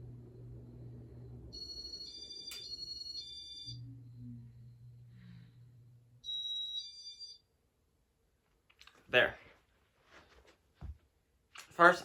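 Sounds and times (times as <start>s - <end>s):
low hum: 0.0s - 6.7s.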